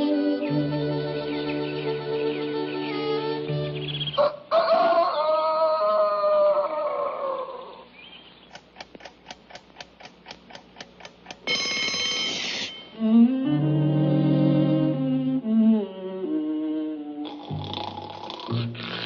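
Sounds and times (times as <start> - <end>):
clock ticking: 8.5 - 12.6
alarm clock bell ringing: 11.4 - 13.0
cartoon orchestral music: 11.5 - 17.3.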